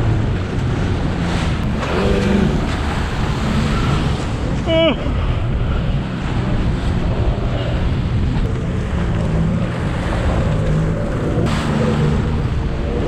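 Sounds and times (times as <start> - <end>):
jet ski engine running: 0.0 - 13.0
water rushing around hull: 0.0 - 13.0
wind buffeting microphone: 0.0 - 13.0.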